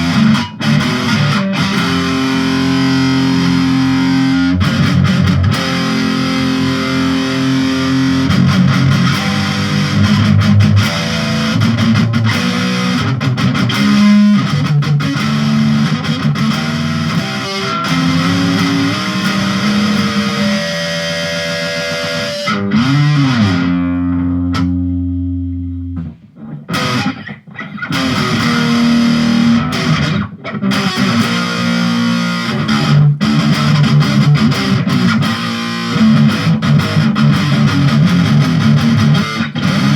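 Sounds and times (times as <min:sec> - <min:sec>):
distorted electric guitar riffs: 0:00.0 - 0:39.9.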